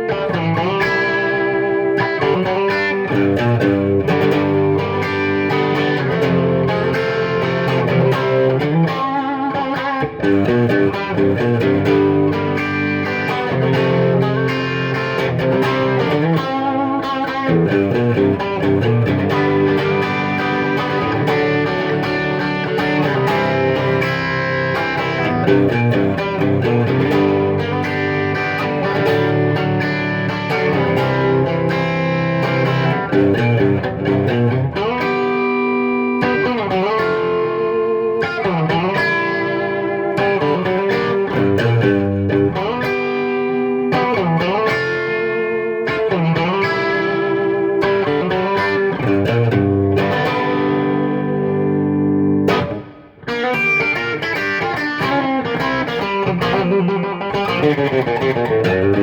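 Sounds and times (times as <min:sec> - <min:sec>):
electric guitar playing chords: 0:00.0 - 0:59.0.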